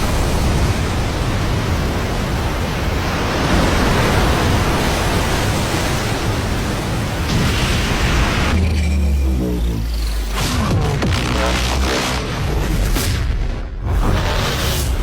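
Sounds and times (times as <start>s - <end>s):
loud rushing roar: 7.3s - 15.0s
low hum: 7.4s - 15.0s.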